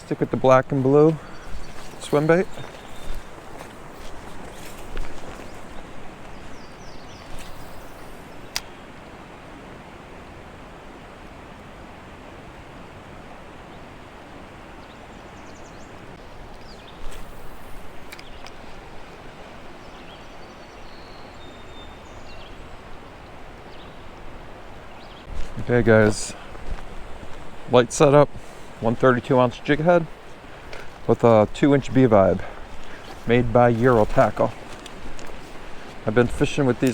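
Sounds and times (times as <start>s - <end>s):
rustling: 0.0s - 8.6s, 25.2s - 36.9s
flowing creek water: 0.0s - 36.9s.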